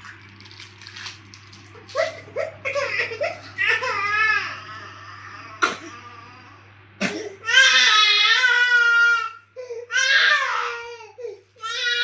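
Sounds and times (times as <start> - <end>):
baby crying: 2.0 - 6.6, 7.4 - 12.0.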